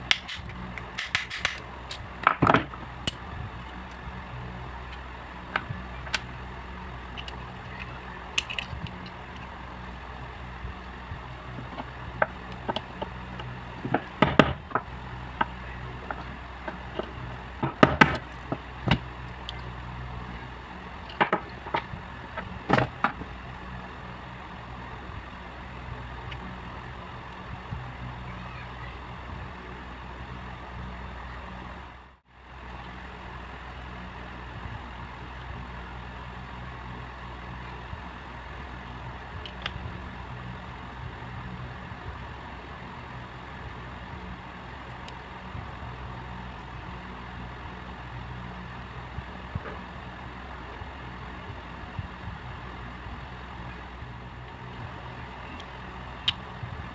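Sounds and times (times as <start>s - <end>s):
sharp clicks and knocks: 0.0s - 4.0s, 7.1s - 9.5s, 11.5s - 19.7s, 21.0s - 23.6s
steady low hum: 0.0s - 56.9s.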